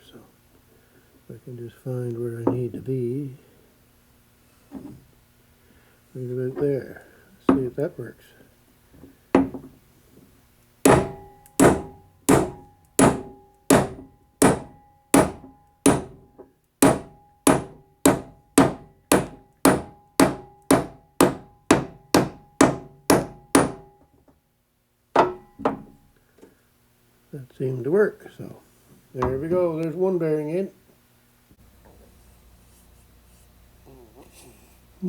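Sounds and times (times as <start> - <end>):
hammer striking metal: 10.8 - 24.0, 25.2 - 26.0.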